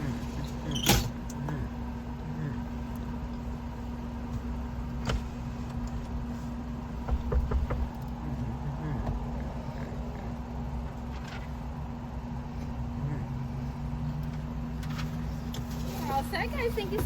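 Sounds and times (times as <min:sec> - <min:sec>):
car engine idling: 0:00.0 - 0:17.0
knocks: 0:07.0 - 0:08.0.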